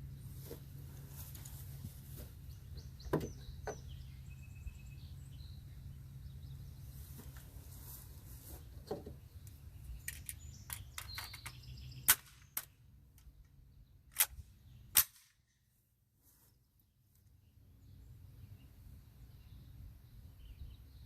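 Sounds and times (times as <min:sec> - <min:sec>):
weaker sharp crack: 0:12.0 - 0:12.8.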